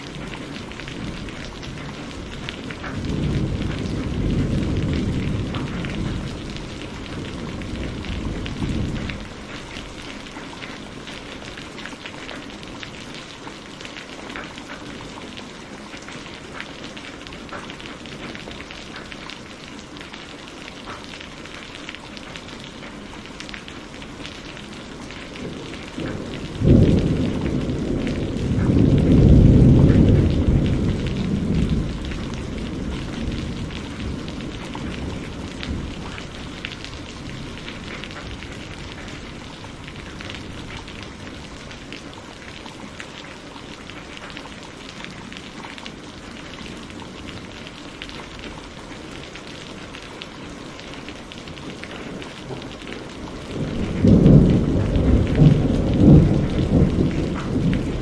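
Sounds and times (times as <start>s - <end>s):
thunder rumbling: 0.0s - 13.3s, 22.6s - 43.0s, 46.2s - 58.0s
steady rain: 0.0s - 58.0s.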